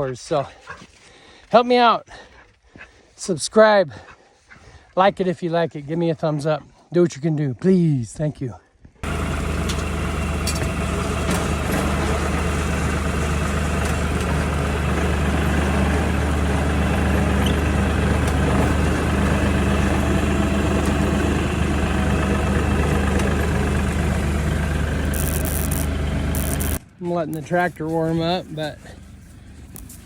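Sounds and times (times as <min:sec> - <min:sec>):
tractor engine idling: 0:09.0 - 0:30.0.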